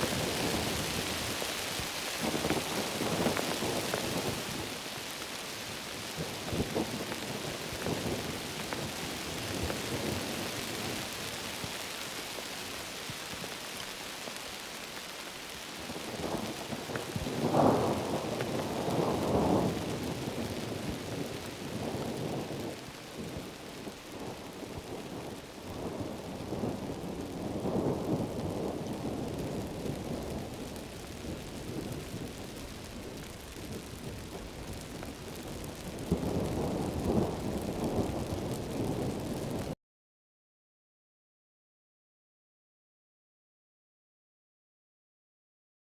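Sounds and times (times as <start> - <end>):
rolling thunder: 0.0 - 5.1, 15.8 - 39.8
heavy rain falling: 0.0 - 39.8.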